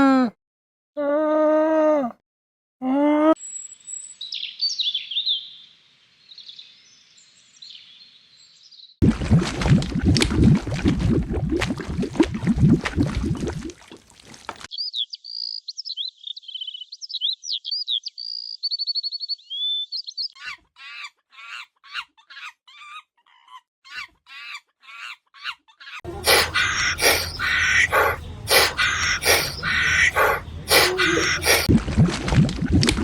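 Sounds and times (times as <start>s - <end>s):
birds chirping: 26.1s - 31.7s
bird trilling and warbling: 26.2s - 31.7s.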